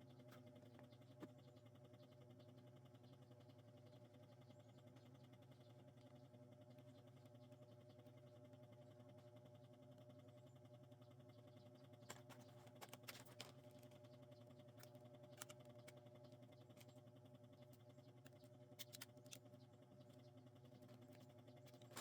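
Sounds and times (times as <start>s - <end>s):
low steady hum: 10.0s - 22.0s.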